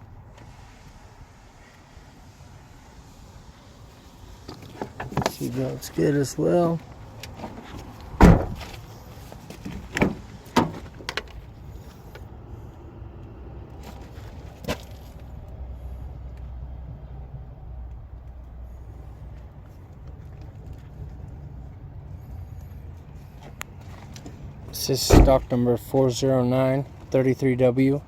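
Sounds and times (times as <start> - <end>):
low steady rumble: 5.0 - 27.4
car door shutting: 8.2 - 8.8, 24.9 - 25.6.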